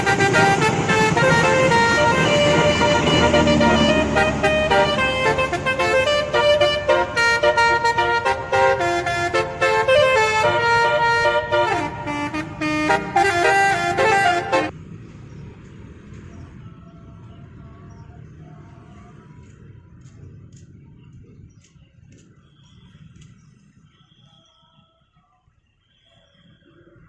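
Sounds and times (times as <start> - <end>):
multi-tone horn playing a tune: 0.0 - 14.7.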